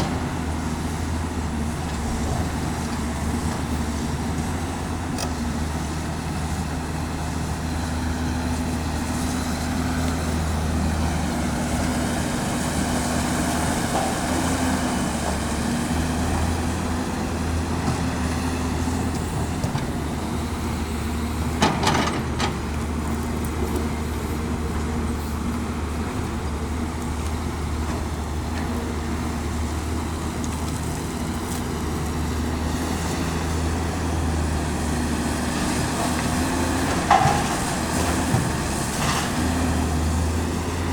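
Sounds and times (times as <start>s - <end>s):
excavator engine running: 0.0s - 40.9s
clatter of knocks: 21.6s - 22.7s, 36.9s - 39.3s.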